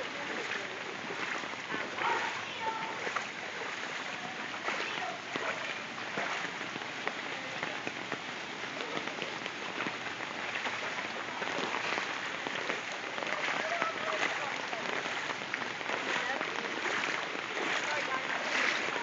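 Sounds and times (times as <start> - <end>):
heavy rain: 0.0 - 19.0.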